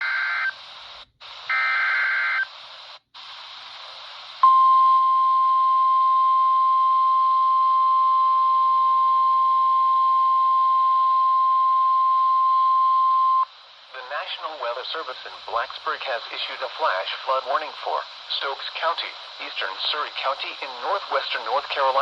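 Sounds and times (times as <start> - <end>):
radio static hiss: 0.0 - 4.5, 13.3 - 22.0.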